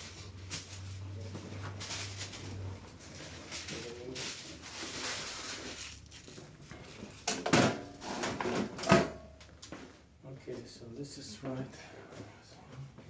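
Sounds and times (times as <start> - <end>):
rustling and creaking on padded table: 0.0 - 10.2.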